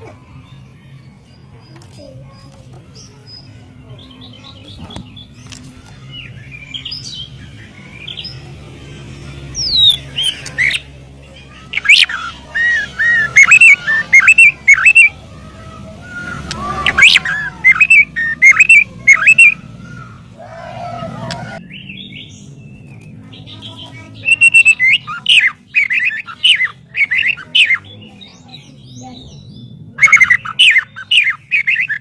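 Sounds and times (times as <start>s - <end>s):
songbird whistling: 9.6s - 10.9s, 11.5s - 15.4s, 16.0s - 20.1s, 24.1s - 28.6s, 29.4s - 32.0s.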